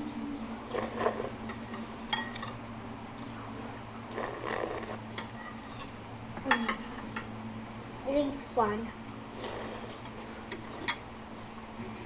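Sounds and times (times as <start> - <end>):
low hum: 0.0 - 4.0.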